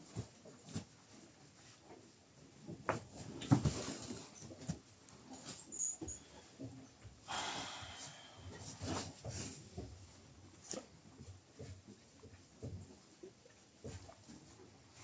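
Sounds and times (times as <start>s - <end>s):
soft knocks and rustles: 0.0s - 7.2s, 8.5s - 15.0s.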